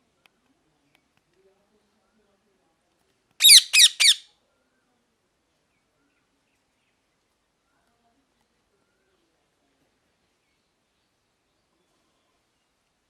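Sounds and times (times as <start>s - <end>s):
parrot calls: 3.4s - 4.2s.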